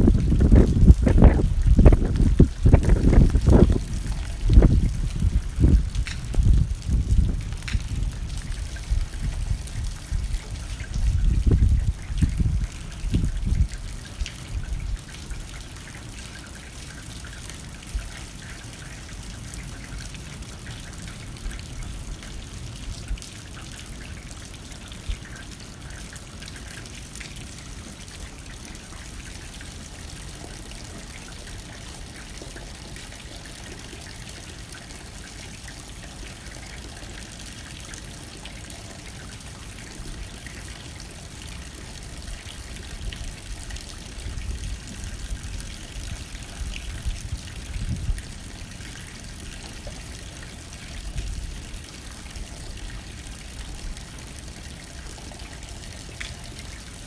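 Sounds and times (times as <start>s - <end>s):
wind gusts: 0.0s - 15.1s, 42.2s - 48.8s
rain on window pane: 0.0s - 57.0s.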